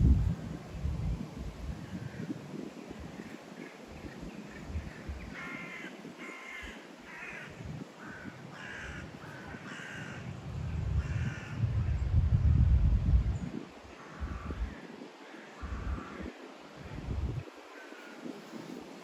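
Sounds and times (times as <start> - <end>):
wind buffeting microphone: 0.0 - 19.0
crow cawing: 5.3 - 10.3, 11.0 - 11.6, 14.0 - 16.4.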